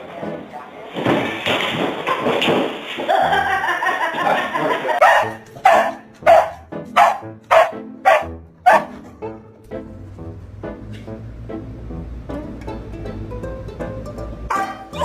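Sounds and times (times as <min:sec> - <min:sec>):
background music: 0:00.0 - 0:01.6, 0:03.1 - 0:15.0
dog barking: 0:05.0 - 0:09.0, 0:14.5 - 0:15.0.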